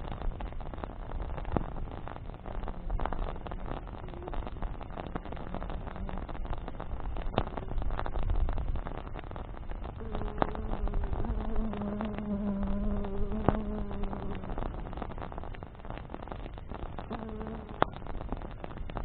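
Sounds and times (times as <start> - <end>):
wood fire crackling: 0.0 - 19.0
flying insect buzzing: 10.0 - 14.6, 17.1 - 17.9.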